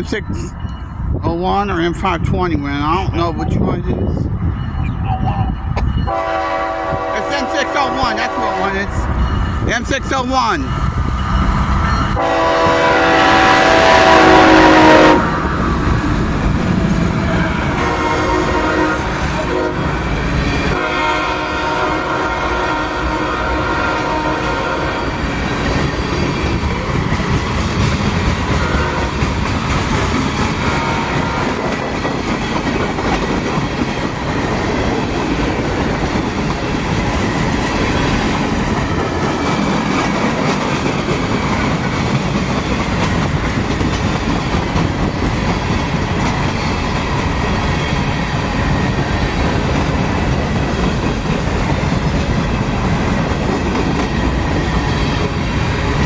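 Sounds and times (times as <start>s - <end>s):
freight train rumbling past: 0.0s - 56.0s
train wheel squeal: 4.0s - 6.3s, 10.6s - 12.2s.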